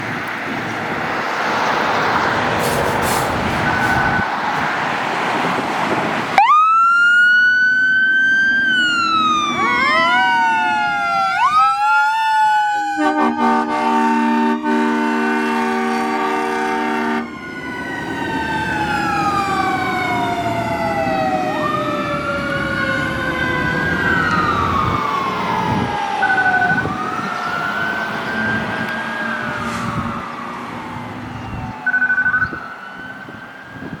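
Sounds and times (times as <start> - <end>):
fire engine sirens wailing: 0.0 - 34.0
train horn chord: 13.0 - 17.3
short high beeps: 31.9 - 32.6.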